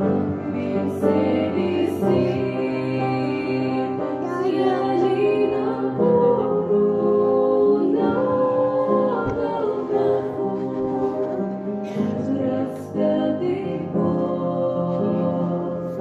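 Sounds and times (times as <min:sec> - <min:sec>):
instrumental accompaniment: 0:00.0 - 0:16.0
high voice singing: 0:03.8 - 0:12.9.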